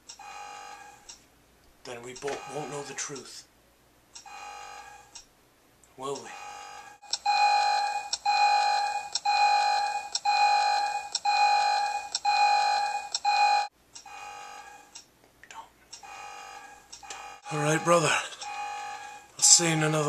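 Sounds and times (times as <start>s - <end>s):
long electronic alarm beeps: 2.2s - 3.0s, 6.3s - 14.9s, 16.0s - 20.0s.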